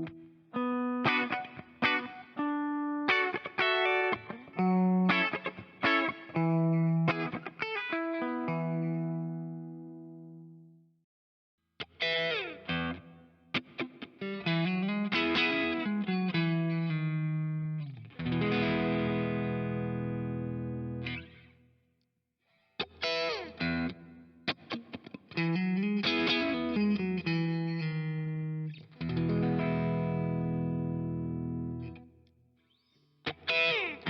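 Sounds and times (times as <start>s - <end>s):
distorted electric guitar: 11.8s - 21.4s, 22.8s - 32.0s, 33.3s - 34.0s.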